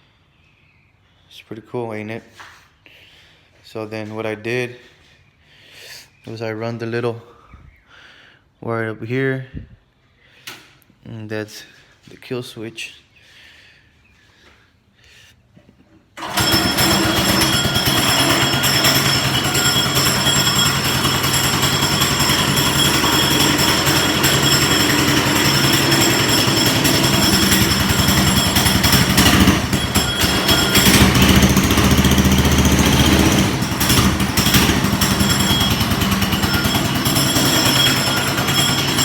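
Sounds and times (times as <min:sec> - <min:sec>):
small go-kart engine running: 0:16.2 - 0:39.0.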